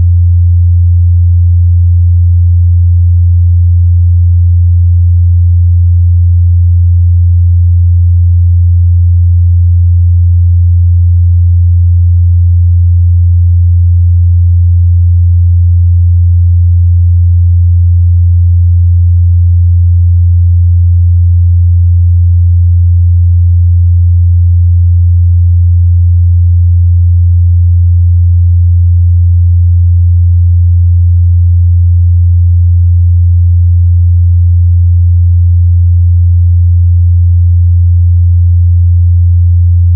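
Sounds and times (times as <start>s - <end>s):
low sine wave test tone: 0.0s - 39.9s.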